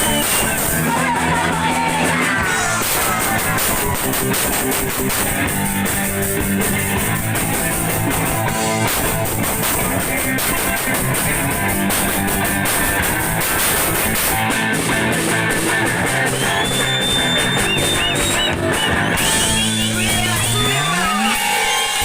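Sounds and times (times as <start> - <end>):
bass guitar: 0.0 - 22.0
bass note sliding upward: 0.0 - 22.0
distorted electric guitar: 0.0 - 22.0
drum kit: 0.0 - 22.0
guitar squeals: 16.0 - 22.0.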